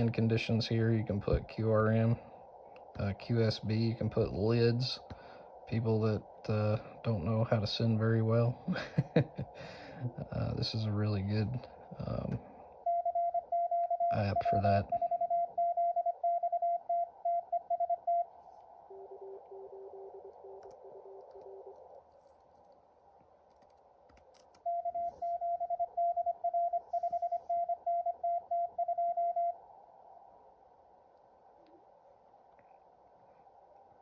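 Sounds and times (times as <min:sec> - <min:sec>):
receiver hiss: 0:00.0 - 0:15.1
faint low morse code keying: 0:23.5 - 0:29.6.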